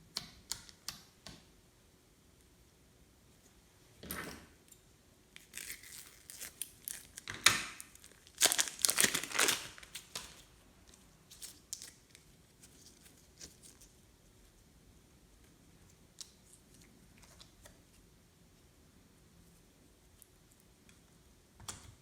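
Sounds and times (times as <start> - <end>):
crackling and crinkling handling: 5.4 - 14.7.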